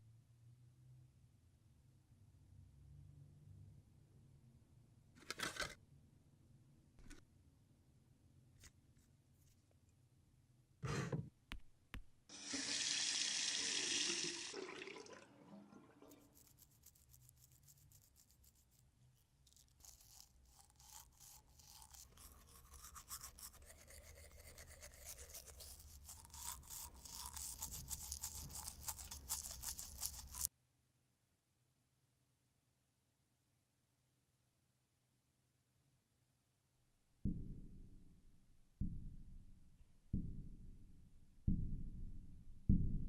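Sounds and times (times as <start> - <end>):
rapid scrubbing strokes: 16.1 - 30.5.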